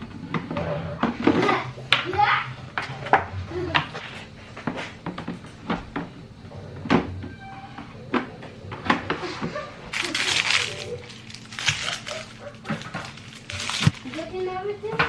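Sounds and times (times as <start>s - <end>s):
rustling and scraping: 9.2s - 15.0s
household knocks and clicks: 10.4s - 14.2s.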